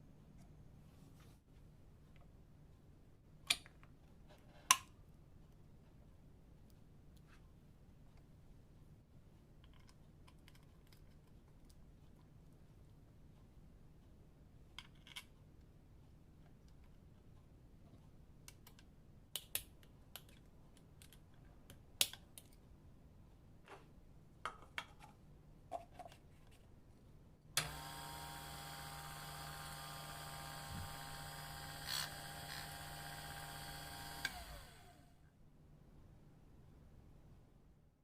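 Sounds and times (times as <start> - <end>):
coffee grinder motor whine: 27.6 - 35.2.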